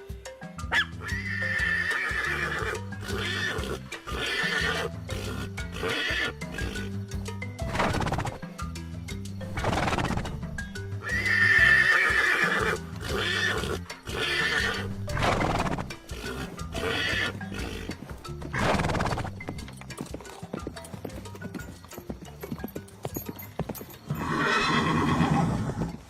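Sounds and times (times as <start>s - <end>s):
background music: 0.0s - 26.0s
hooves clip-clopping: 0.0s - 26.0s
horse neighing: 0.7s - 7.0s, 7.6s - 8.4s, 9.5s - 19.5s, 24.1s - 26.0s.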